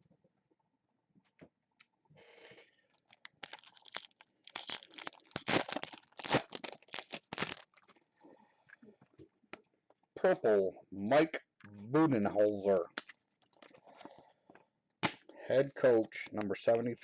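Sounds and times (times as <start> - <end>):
foil wrapper tearing and crinkling: 3.0 - 7.9.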